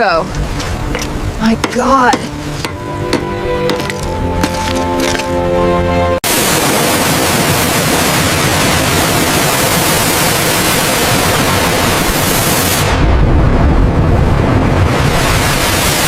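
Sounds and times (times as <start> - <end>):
loud static hiss: 6.3 - 13.0.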